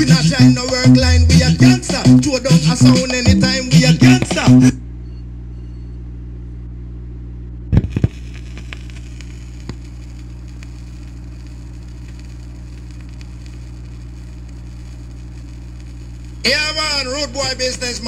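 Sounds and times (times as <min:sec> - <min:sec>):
mains hum: 0:00.0 - 0:18.0
record hiss and crackle: 0:07.0 - 0:18.0
record clicks: 0:07.7 - 0:16.4.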